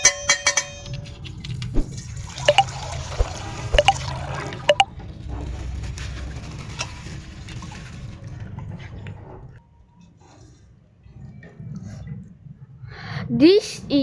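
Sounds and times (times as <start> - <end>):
water draining from plastic bag: 1.3 - 9.2
droplet plinks: 2.5 - 2.8, 3.7 - 4.0.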